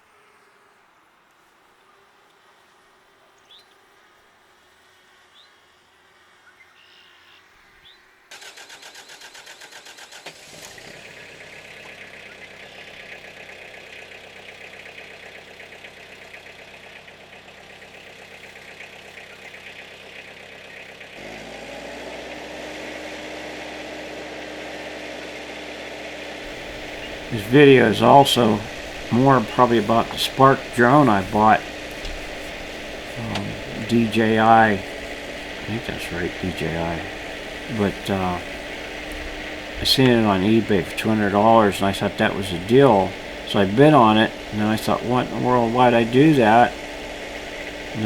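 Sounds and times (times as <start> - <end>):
faint bird chirps: 3.3 - 3.8, 6.4 - 8.1, 11.1 - 13.3
tractor diesel engine: 8.4 - 48.0.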